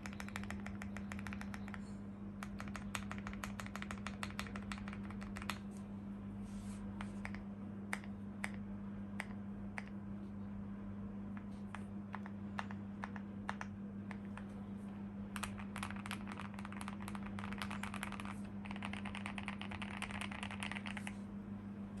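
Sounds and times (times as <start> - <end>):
typing on mechanical keyboard: 0.0 - 1.8, 2.4 - 5.6, 15.4 - 21.1
steady low hum: 0.0 - 22.0.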